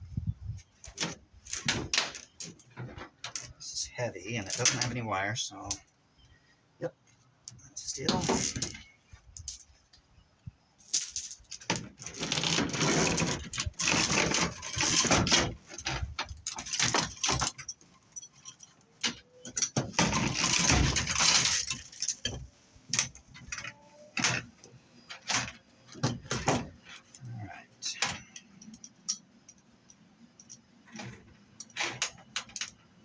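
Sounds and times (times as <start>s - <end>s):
metal rattling and scraping: 0.2s - 5.7s, 7.5s - 9.8s, 10.8s - 33.0s
metal pieces clanking: 10.9s - 24.4s.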